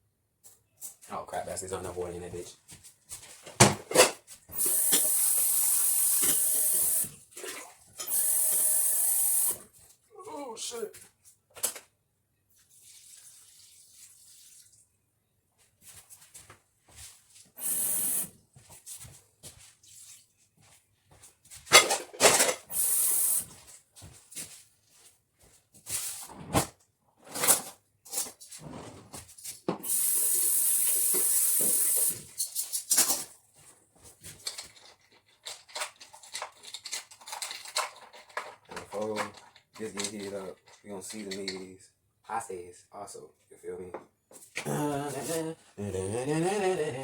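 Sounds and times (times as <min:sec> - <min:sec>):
kitchen tap water running: 0:04.5 - 0:07.1, 0:08.0 - 0:09.6, 0:17.6 - 0:18.3, 0:22.7 - 0:23.4, 0:29.8 - 0:32.3.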